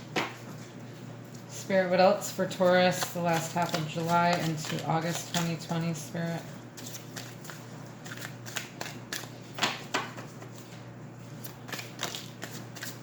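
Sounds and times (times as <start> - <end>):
cards being shuffled: 3.0 - 5.9, 6.8 - 9.8, 11.4 - 13.0.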